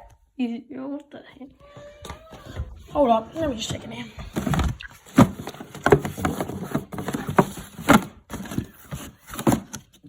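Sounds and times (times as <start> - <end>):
wooden knocks and clatters: 1.8 - 9.8.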